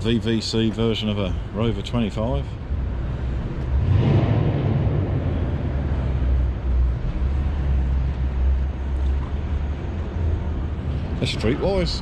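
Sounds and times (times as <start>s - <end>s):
low rumble: 2.8s - 11.2s.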